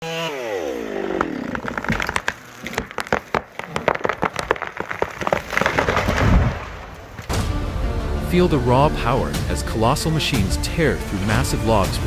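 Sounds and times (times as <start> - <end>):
chainsaw engine slowing down: 0.0 - 2.6
wood cracking and splintering: 0.6 - 7.5.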